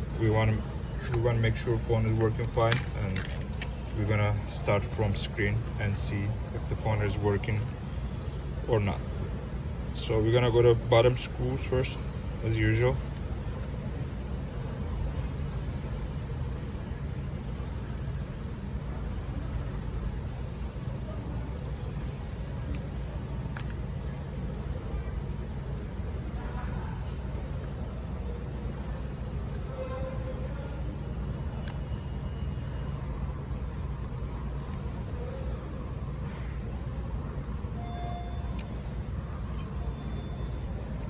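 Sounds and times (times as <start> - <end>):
low mechanical hum: 0.0 - 41.0
low background rumble: 40.7 - 41.0.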